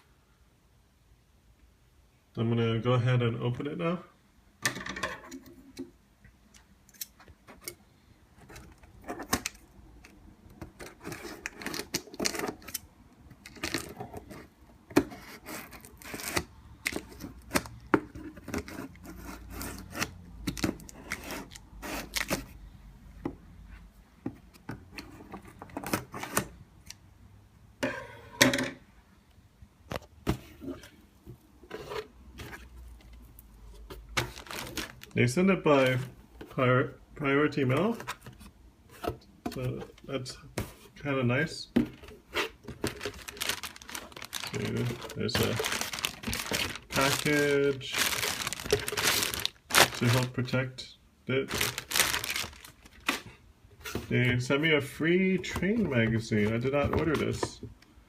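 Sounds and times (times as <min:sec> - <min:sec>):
cardboard scraping and rubbing: 0:18.2 - 0:22.5, 0:42.0 - 0:50.3, 0:51.5 - 0:54.4.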